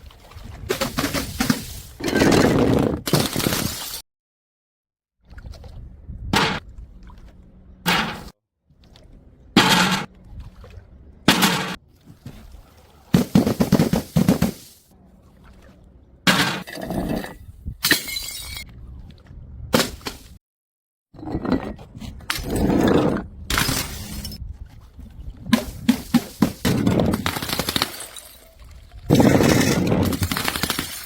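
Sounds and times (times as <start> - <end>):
glass bottles smashing: 17.8 - 18.6, 23.5 - 24.4, 26.0 - 28.5.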